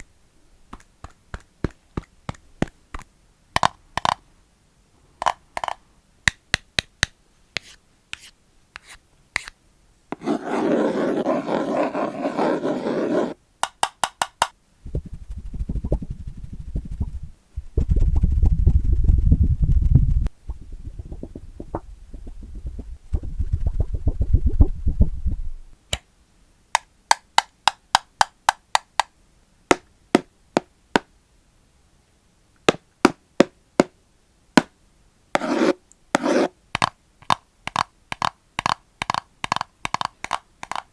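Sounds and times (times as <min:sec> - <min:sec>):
scratchy rubbing: 0:07.6 - 0:09.5, 0:10.1 - 0:13.4, 0:35.4 - 0:36.5
deep muffled rumbling: 0:14.9 - 0:25.7.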